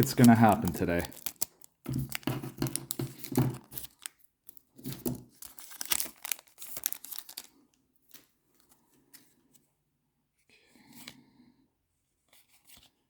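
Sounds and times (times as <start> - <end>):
foil wrapper crinkling and tearing: 0.0 - 8.3.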